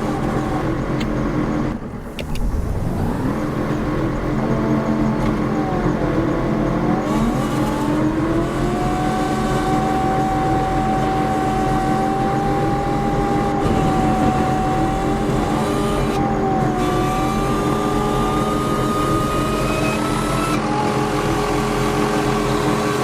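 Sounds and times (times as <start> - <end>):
car engine: 0.0 - 23.0
road noise: 0.0 - 23.0.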